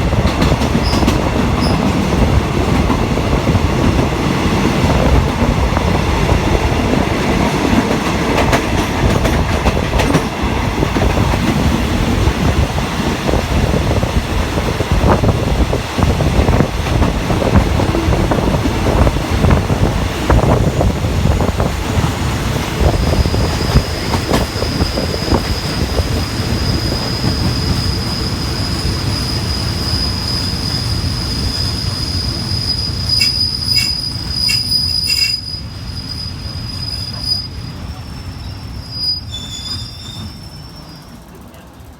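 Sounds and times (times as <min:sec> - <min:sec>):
train wheels clattering: 0:00.0 - 0:13.8, 0:16.5 - 0:35.6
train brake squeal: 0:00.8 - 0:01.9, 0:23.0 - 0:41.4.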